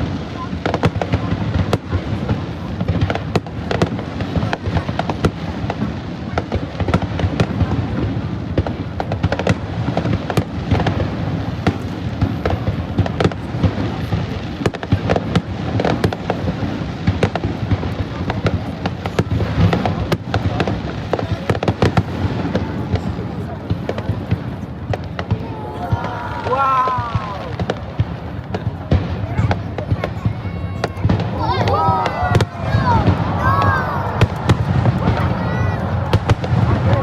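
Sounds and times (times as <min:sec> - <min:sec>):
crowd noise: 0:00.0 - 0:37.0
fireworks cracks and bangs: 0:00.0 - 0:37.0.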